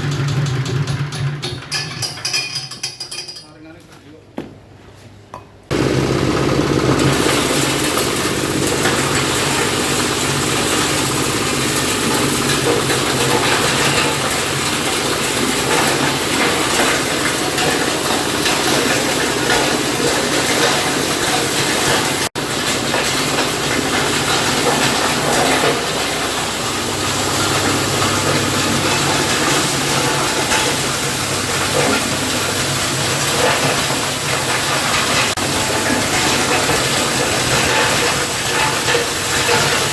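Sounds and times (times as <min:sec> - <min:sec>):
motor drone: 0:05.7 - 0:13.4
hissing mechanical grinding: 0:05.7 - 0:39.9.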